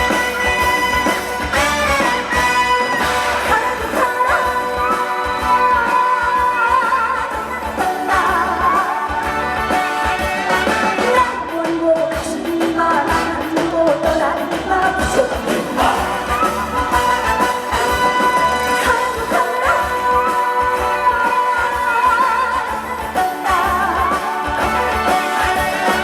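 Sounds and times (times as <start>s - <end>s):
trot song with full band: 0.0s - 26.0s.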